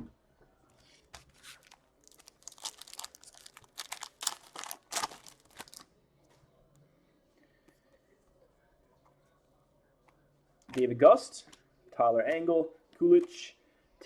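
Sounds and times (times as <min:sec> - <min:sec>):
wrapper being torn and crinkled: 0:01.2 - 0:05.9.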